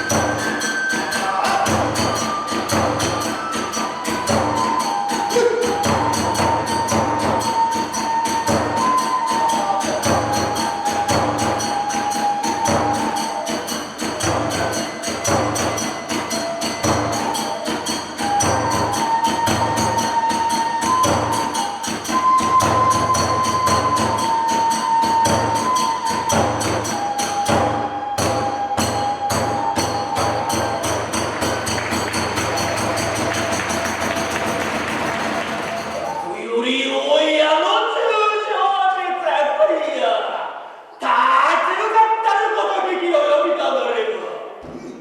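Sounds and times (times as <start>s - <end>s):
hand cymbals clashing: 0.0s - 27.6s, 28.2s - 36.4s
bamboo flute melody: 0.0s - 36.6s
big drum beating: 25.3s - 36.2s.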